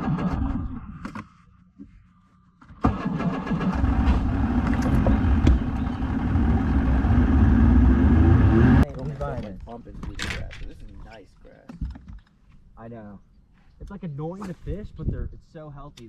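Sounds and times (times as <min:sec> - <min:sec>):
outboard motor rumbling: 0:03.3 - 0:08.8.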